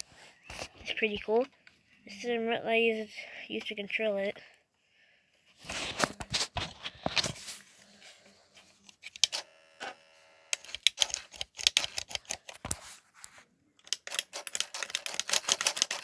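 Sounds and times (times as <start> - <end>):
plastic remote clicking: 8.8 - 12.8, 13.8 - 16.0.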